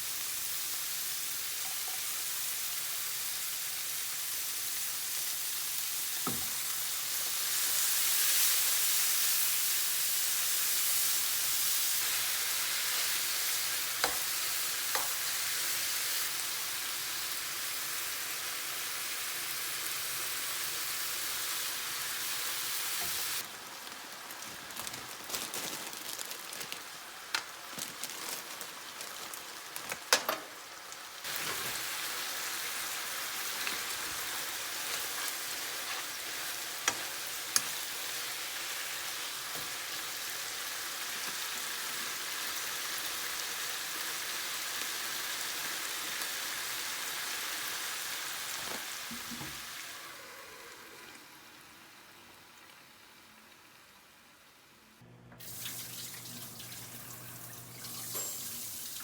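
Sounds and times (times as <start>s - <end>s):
food sizzling in a frying pan: 0.0s - 54.0s, 55.4s - 59.0s
cooking utensil clicks and taps: 14.0s - 14.3s, 14.9s - 15.2s, 30.1s - 30.5s, 36.8s - 37.8s.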